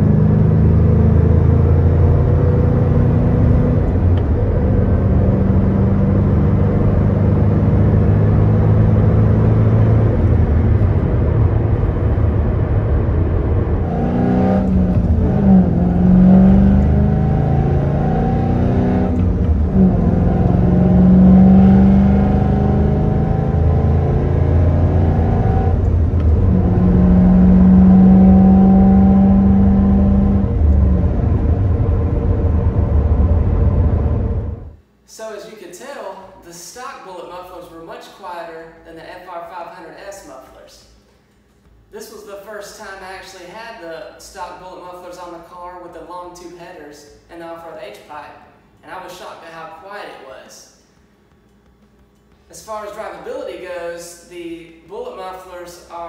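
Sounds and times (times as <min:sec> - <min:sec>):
car engine revving: 0:00.0 - 0:34.8.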